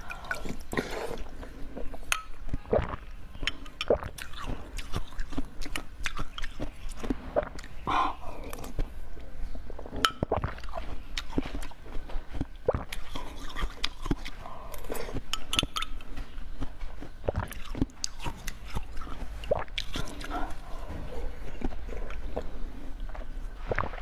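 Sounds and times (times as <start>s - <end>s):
crunchy chewing: 2.7s - 24.0s.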